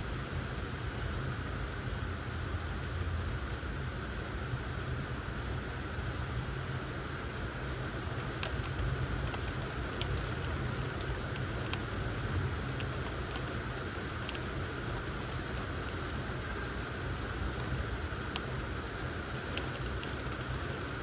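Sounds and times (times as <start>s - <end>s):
continuous low rumble: 0.0s - 21.0s
steady rain hiss: 0.1s - 21.0s
sharp raindrop ticks: 7.9s - 21.0s.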